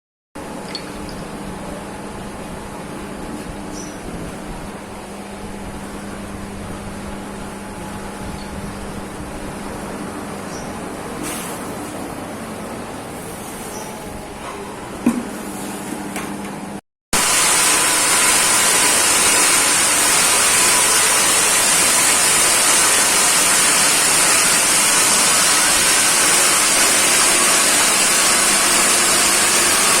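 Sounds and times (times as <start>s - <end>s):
roasting machine hissing: 17.2s - 30.0s.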